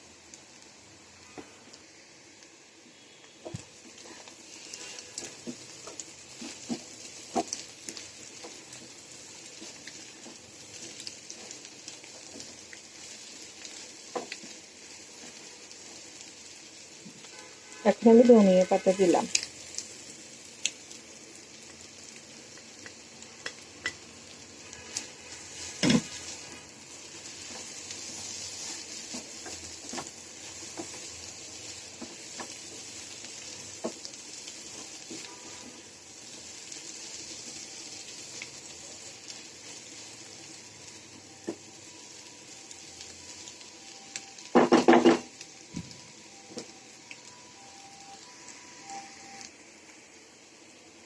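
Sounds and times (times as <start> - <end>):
vegetables sizzling in a frying pan: 0.0 - 51.0
spatula scraping and tapping pan: 4.7 - 8.7.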